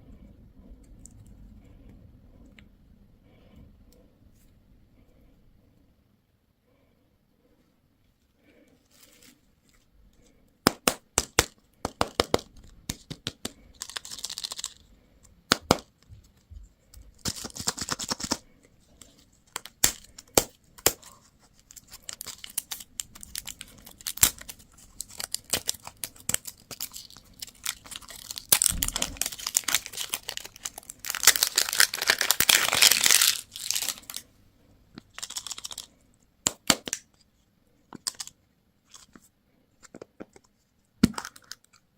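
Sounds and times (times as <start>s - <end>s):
plastic wrappers crinkling and tearing: 13.4s - 14.9s, 19.0s - 34.2s, 35.0s - 35.9s.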